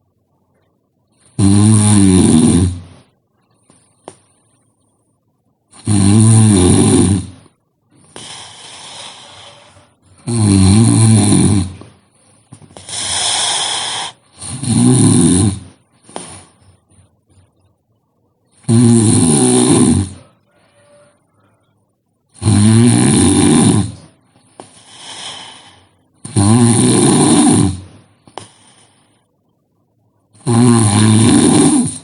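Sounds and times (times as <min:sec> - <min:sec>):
person snoring heavily: 0:01.2 - 0:03.0, 0:05.7 - 0:12.0, 0:12.7 - 0:16.6, 0:18.6 - 0:21.0, 0:22.3 - 0:29.0, 0:30.4 - 0:32.0.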